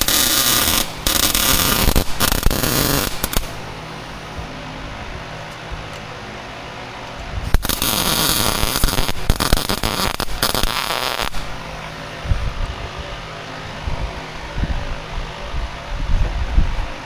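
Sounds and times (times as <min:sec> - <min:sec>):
arc welding crackle: 0:00.0 - 0:03.7, 0:07.4 - 0:11.6.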